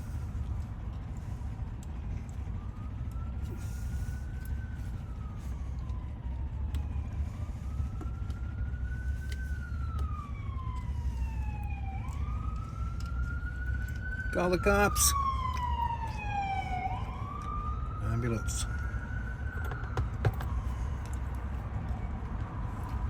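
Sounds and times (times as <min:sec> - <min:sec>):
emergency siren wailing: 0:00.0 - 0:23.0
steady low rumble: 0:00.0 - 0:23.0.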